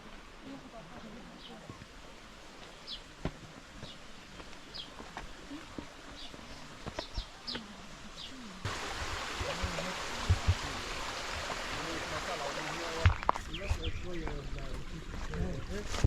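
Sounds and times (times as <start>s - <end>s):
stream rushing: 8.6s - 13.3s.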